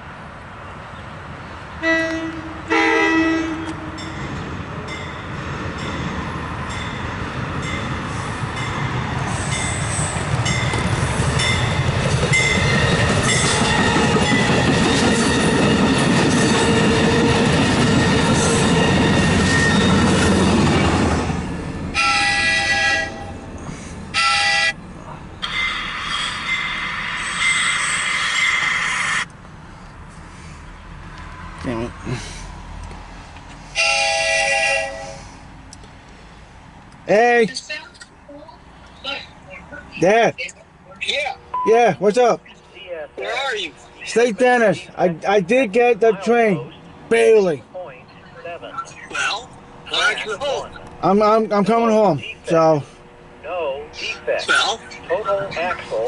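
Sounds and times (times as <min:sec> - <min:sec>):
rumble of train wheels: 0:01.2 - 0:37.1, 0:42.2 - 0:56.0
train horn blasts: 0:01.8 - 0:04.2, 0:21.9 - 0:23.5, 0:24.1 - 0:24.8, 0:33.7 - 0:35.2.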